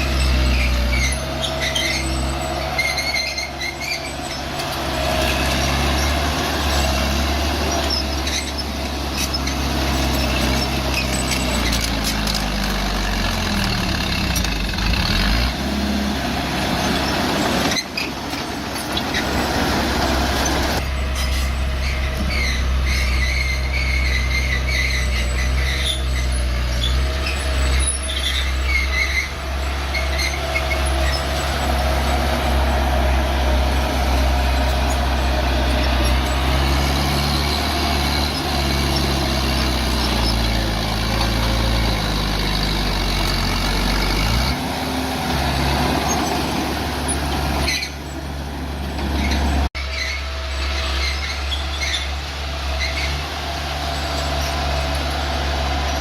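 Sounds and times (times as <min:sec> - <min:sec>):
metal on metal squeaks: 0:00.0 - 0:12.5, 0:20.4 - 0:42.6, 0:45.8 - 0:48.3, 0:49.0 - 0:53.3
bulldozer diesel engine: 0:00.0 - 0:56.0.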